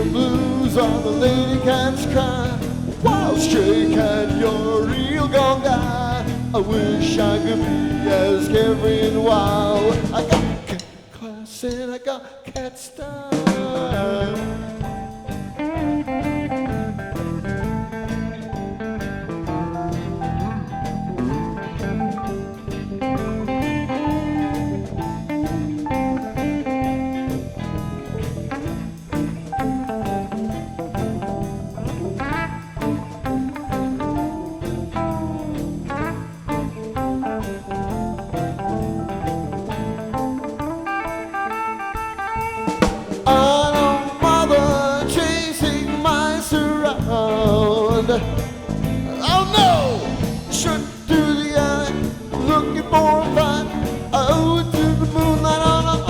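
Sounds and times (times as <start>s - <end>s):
bass: 0.0s - 10.9s, 13.4s - 56.0s
electric guitar lead: 0.0s - 11.2s, 13.3s - 56.0s
drum kit: 0.0s - 56.0s.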